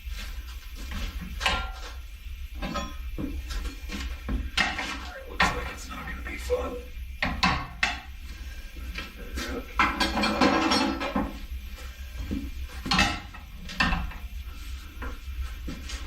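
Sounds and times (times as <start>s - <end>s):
steady low hum: 0.0s - 16.0s
metal clanks and knocks: 0.9s - 2.0s, 2.6s - 3.6s, 4.2s - 5.8s, 7.2s - 8.1s, 9.0s - 11.5s, 12.2s - 14.3s.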